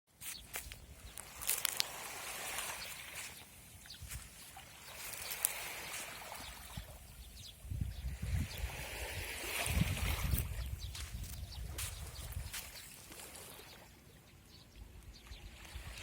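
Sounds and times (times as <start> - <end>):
footsteps on sand and shells: 0.1 - 6.8, 9.5 - 13.6
small waves washing on beach: 0.2 - 14.0
wind buffeting microphone: 5.9 - 12.8.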